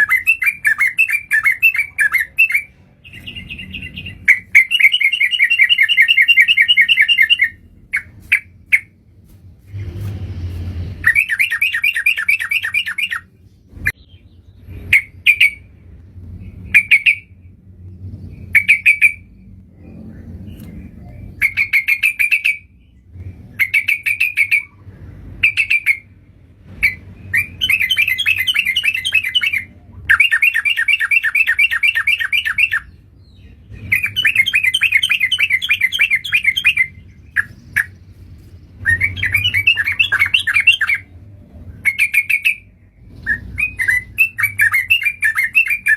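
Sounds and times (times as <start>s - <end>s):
bulbul calls: 0.0s - 9.0s, 38.8s - 41.1s.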